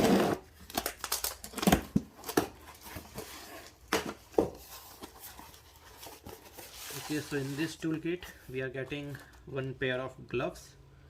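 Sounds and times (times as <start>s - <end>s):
packaging crinkling and rustling: 0.4s - 8.0s.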